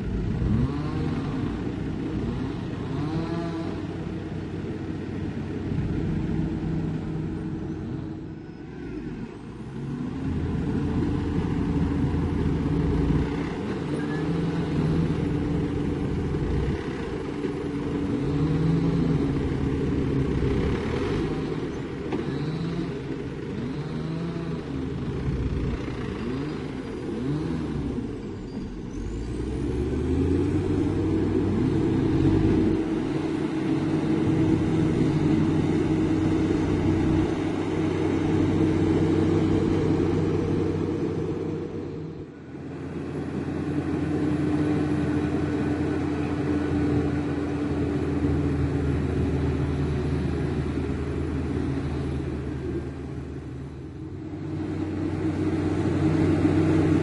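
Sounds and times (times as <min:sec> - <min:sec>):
heavy diesel engines revving: 0:00.0 - 0:57.0.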